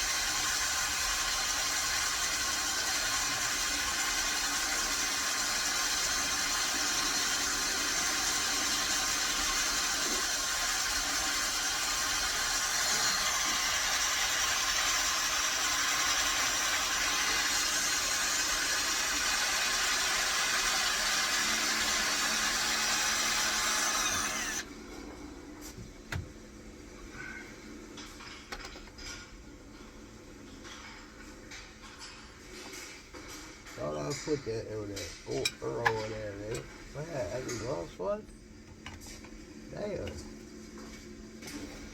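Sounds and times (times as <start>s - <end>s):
power drill boring: 0.0s - 24.7s.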